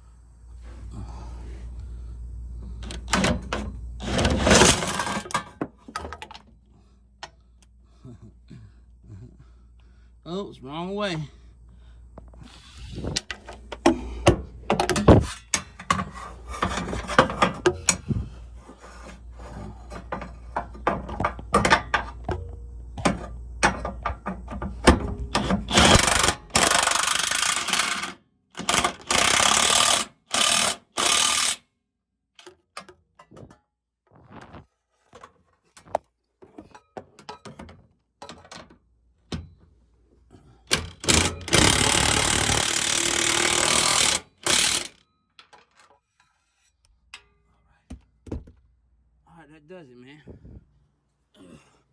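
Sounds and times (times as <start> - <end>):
power tool bursts: 4.0 - 5.4, 25.3 - 31.6, 40.7 - 45.0
tools clicking against metal: 47.1 - 47.4.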